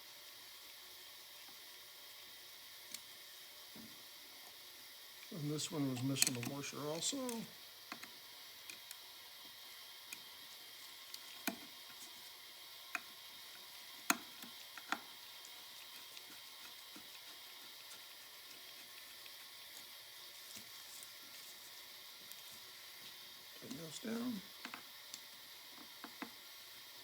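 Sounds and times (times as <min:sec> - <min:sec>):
faint steady hiss: 0:00.0 - 0:27.0
small metal parts clicking: 0:06.0 - 0:07.5.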